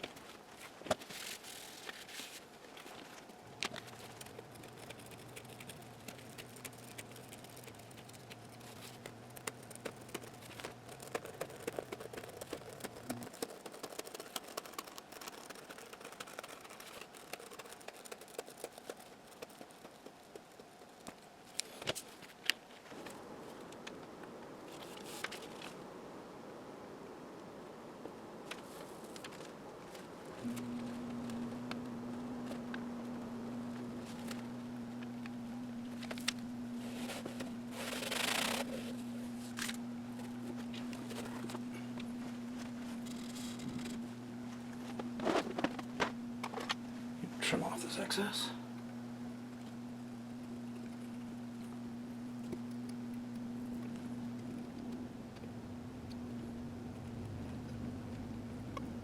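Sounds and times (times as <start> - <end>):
scratching and rustling: 0.0 - 23.7, 35.9 - 47.3
steady low hum: 0.0 - 59.0.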